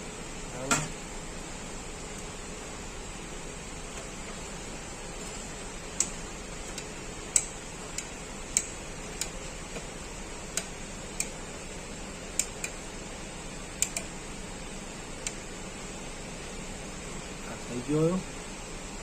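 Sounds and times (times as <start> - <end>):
steady hiss: 0.0 - 19.0.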